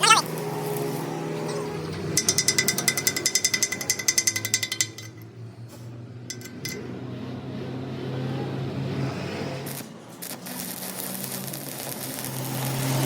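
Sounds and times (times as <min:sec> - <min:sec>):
rapid metal-on-metal strikes: 0:01.4 - 0:05.4, 0:06.3 - 0:07.0.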